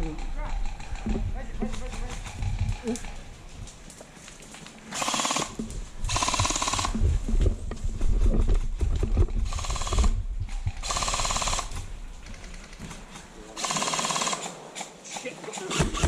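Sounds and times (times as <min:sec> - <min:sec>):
airsoft guns firing bursts: 0:04.9 - 0:07.0, 0:09.5 - 0:11.8, 0:13.6 - 0:16.0.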